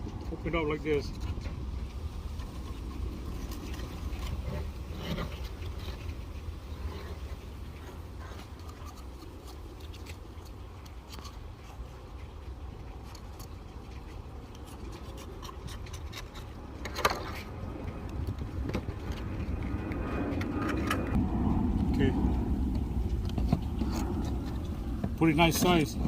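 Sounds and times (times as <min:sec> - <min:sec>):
steady low rumble: 0:00.0 - 0:26.0
knife scraping clam shell: 0:07.8 - 0:12.1, 0:12.9 - 0:17.6.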